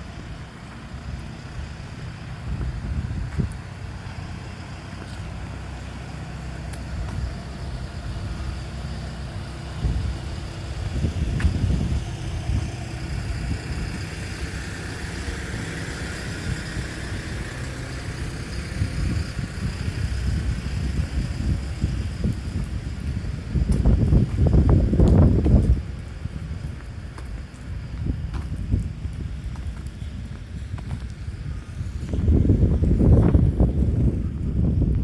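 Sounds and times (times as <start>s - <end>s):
road traffic rumble: 0.0s - 35.0s
tyres hissing: 0.1s - 33.8s.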